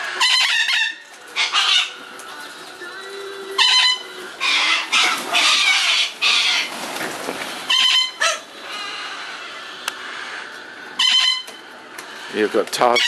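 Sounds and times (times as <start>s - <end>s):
birds screeching: 0.0s - 13.0s.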